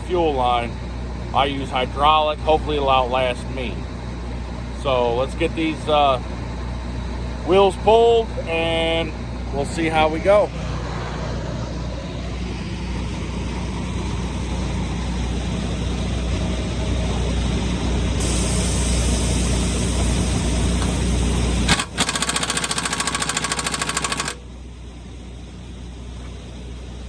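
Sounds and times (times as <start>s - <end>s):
air compressor running: 13.0s - 24.8s
pneumatic impact wrench hammering: 18.2s - 24.4s.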